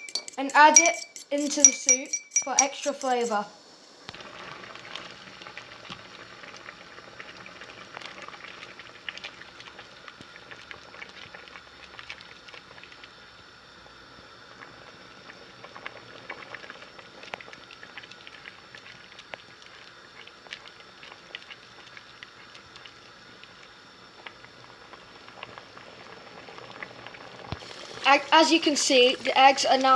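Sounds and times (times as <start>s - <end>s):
soup bubbling in a pot: 3.6s - 29.9s.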